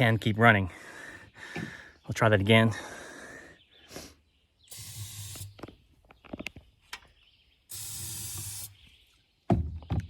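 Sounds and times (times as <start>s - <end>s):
aerosol can hissing: 4.7s - 5.6s, 7.7s - 8.8s.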